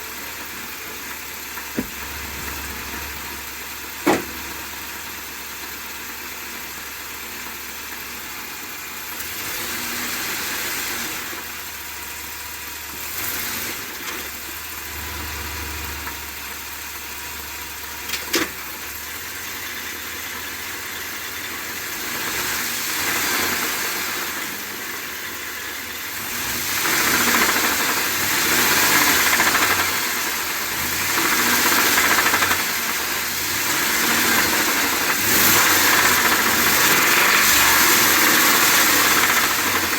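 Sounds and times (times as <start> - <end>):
car engine running with knocking noise: 0.0 - 39.9.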